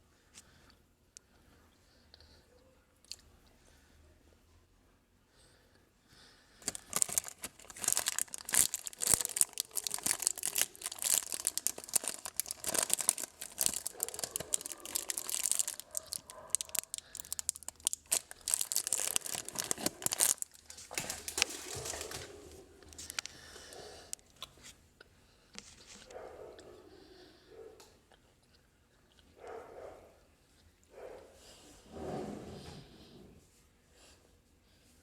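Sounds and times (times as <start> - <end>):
plastic packaging crinkling: 6.6 - 23.5.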